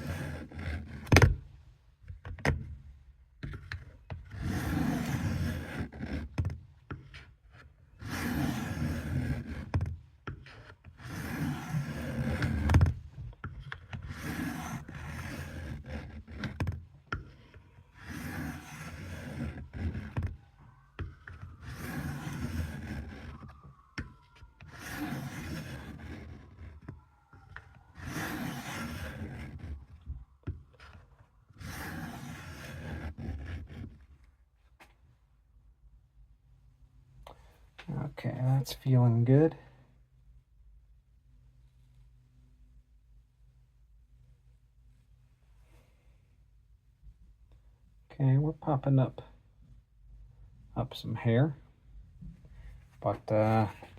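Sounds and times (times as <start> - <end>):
knife scraping on whetstone: 10.5 - 12.6, 14.0 - 16.5, 17.9 - 20.2, 21.6 - 23.5, 24.6 - 26.9, 28.0 - 29.8, 31.6 - 33.8.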